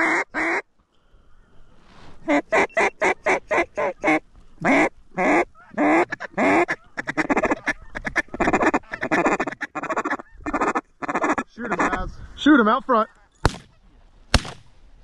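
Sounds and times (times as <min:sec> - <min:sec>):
duck call quacking: 0:00.0 - 0:00.6, 0:02.2 - 0:12.0.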